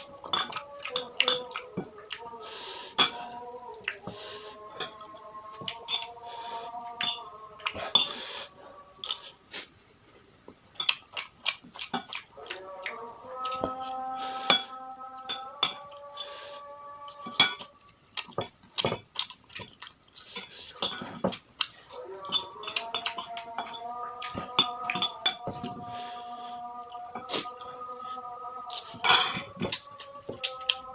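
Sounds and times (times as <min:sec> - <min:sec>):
spoon clinking against bowl: 0:00.2 - 0:02.0, 0:03.0 - 0:03.3, 0:04.8 - 0:06.1, 0:07.0 - 0:08.1, 0:14.5 - 0:16.3, 0:17.1 - 0:19.0, 0:22.2 - 0:25.6, 0:28.7 - 0:30.8.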